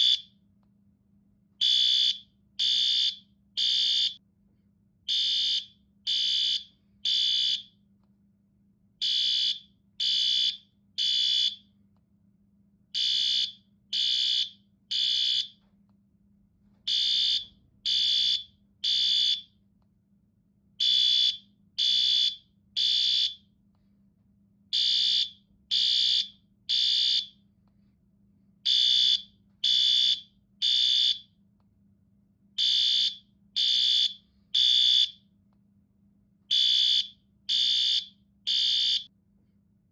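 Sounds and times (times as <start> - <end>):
fire alarm beeping: 0.0 - 0.4, 1.6 - 4.2, 5.1 - 7.8, 9.0 - 11.7, 13.0 - 15.6, 16.9 - 19.5, 20.8 - 23.4, 24.7 - 27.4, 28.6 - 31.3, 32.6 - 35.2, 36.5 - 39.1.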